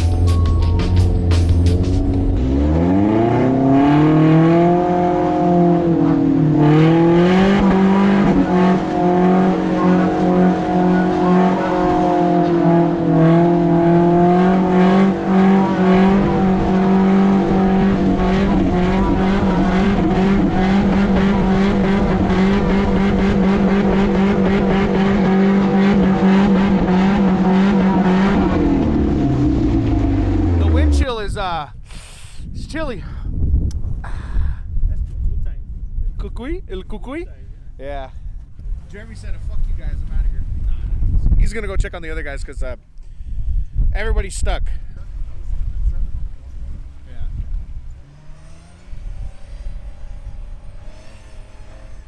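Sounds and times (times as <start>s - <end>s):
vehicle engine revving: 0.0s - 31.5s, 45.0s - 52.0s.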